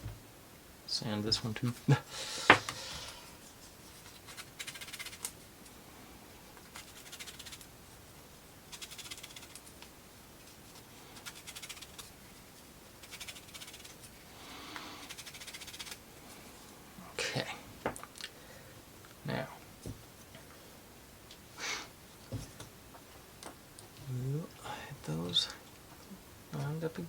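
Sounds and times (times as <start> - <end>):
sandpaper rubbing on wood: 11.2 - 12.1, 13.0 - 14.1, 15.1 - 16.0.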